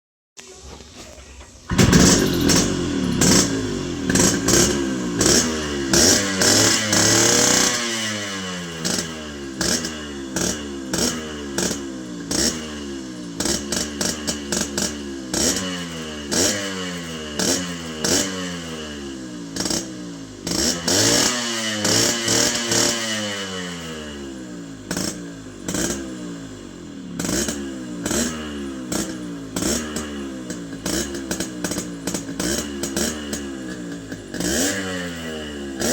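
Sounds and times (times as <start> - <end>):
two-stroke engine revving: 1.7 - 35.9.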